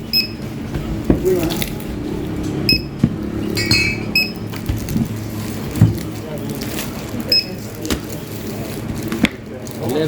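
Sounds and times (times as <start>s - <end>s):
barcode scanner beeps: 0.1s - 0.4s, 2.7s - 4.5s, 7.3s - 7.6s.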